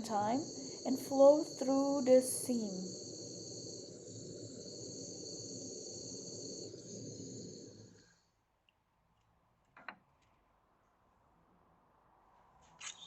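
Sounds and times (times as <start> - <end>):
torch flame rushing and hissing: 0.0 - 8.2.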